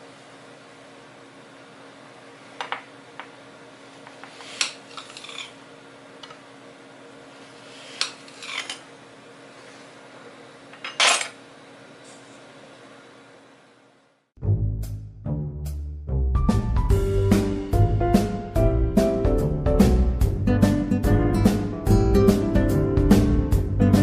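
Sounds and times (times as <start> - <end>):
utensils clicking and scraping dish: 4.3 - 5.6, 7.9 - 8.8.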